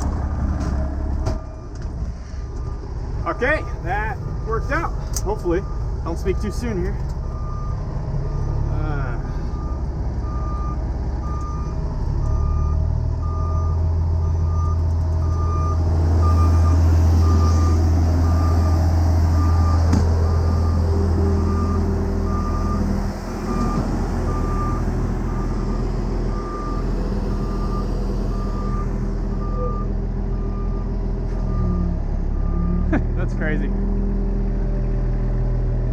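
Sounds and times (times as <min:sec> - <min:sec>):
diesel engine running: 0:00.0 - 0:35.9
backup alarm beeping: 0:02.6 - 0:22.9.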